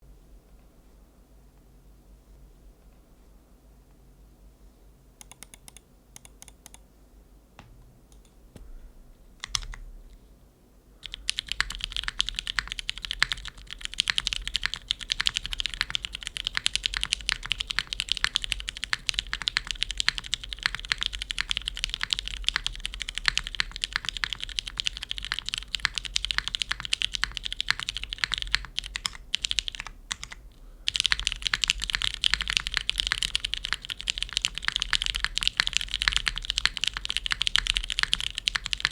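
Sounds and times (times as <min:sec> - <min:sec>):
mechanical keyboard typing: 0:05.2 - 0:06.8, 0:09.4 - 0:09.8, 0:11.0 - 0:38.9.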